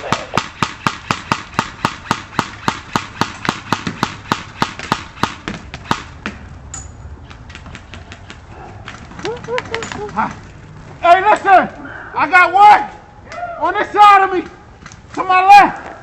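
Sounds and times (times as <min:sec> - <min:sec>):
airsoft gun shots: 0:00.0 - 0:06.2.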